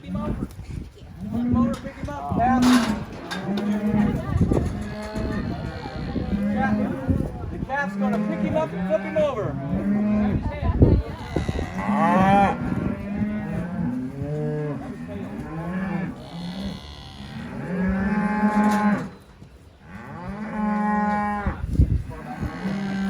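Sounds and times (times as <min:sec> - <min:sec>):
cattle bawling: 0:02.6 - 0:07.1, 0:22.1 - 0:23.0.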